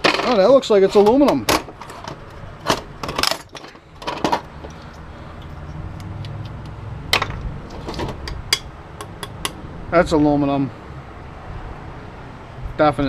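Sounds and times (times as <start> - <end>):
metal parts clinking: 0.0 - 5.8.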